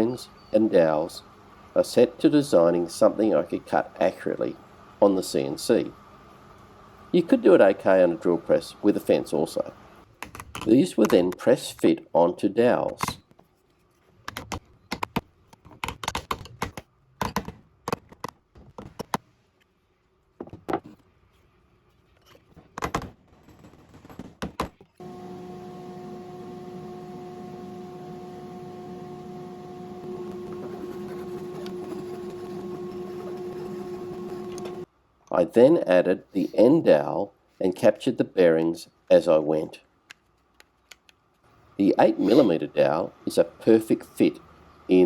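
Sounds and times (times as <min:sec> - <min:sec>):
steady hum with held tone: 0:25.0 - 0:34.9.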